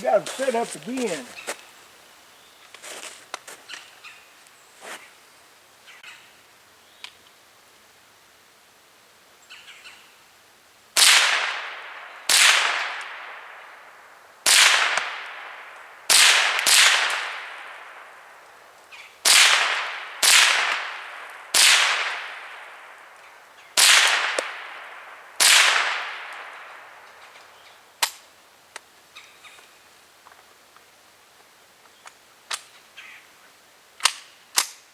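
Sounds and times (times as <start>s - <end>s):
rifle shots echoing: 11.0s - 13.6s, 14.5s - 18.0s, 19.2s - 22.8s, 23.8s - 26.9s.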